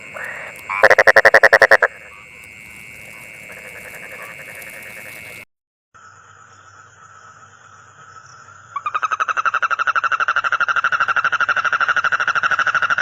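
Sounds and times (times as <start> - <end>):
frog calling in rapid trill: 0.1 - 2.2, 3.1 - 5.4, 8.8 - 13.0.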